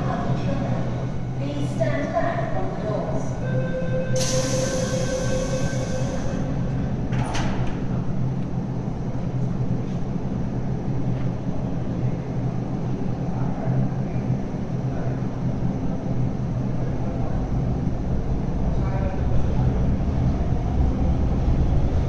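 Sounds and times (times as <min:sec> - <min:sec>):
train rumbling through station: 0:00.0 - 0:22.0.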